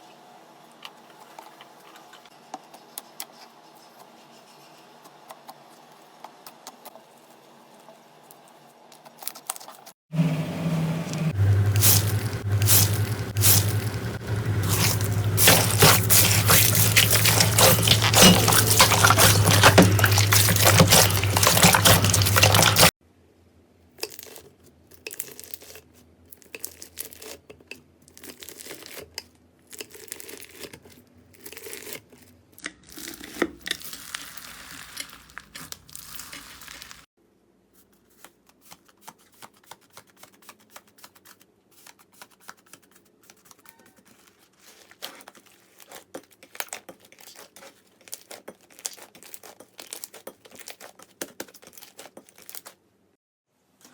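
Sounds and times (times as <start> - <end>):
slime squeezed and stretched: 14.6 - 22.9.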